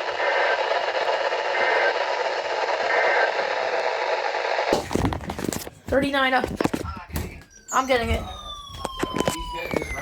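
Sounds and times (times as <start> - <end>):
radio static hiss: 0.0 - 4.7.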